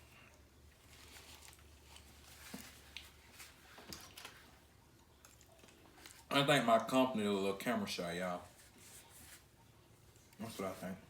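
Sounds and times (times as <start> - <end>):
low steady hum: 0.0 - 11.0
soft eating clicks and smacks: 1.3 - 7.0.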